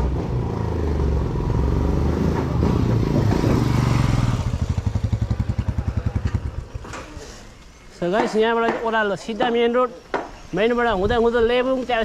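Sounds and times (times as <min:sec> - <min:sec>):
vehicle engine idling: 0:03.7 - 0:06.9.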